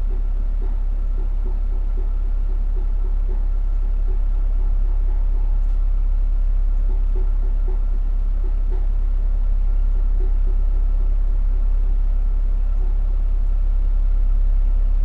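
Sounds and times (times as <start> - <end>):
faint steady whine: 0.0 - 15.0
heat pump humming: 0.0 - 15.0.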